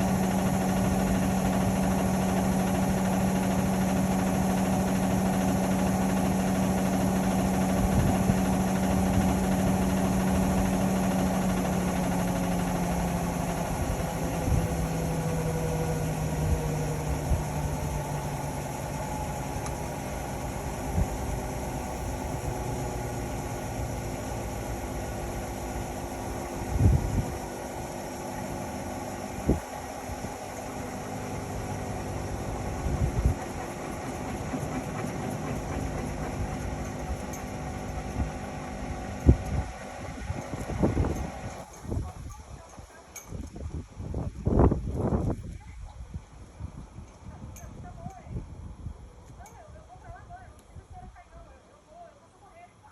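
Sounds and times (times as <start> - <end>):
washing machine motor winding down: 0.0 - 42.3.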